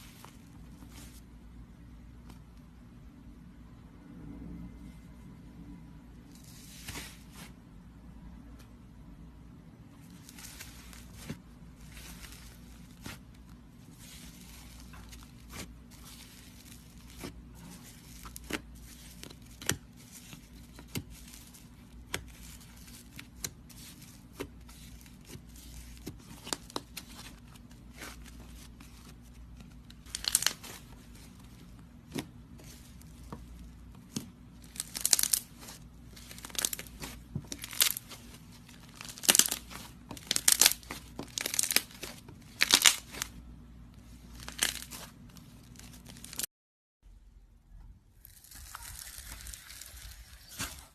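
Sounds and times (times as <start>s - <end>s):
slime clicking and crackling: 30.0s - 30.8s, 32.0s - 43.3s.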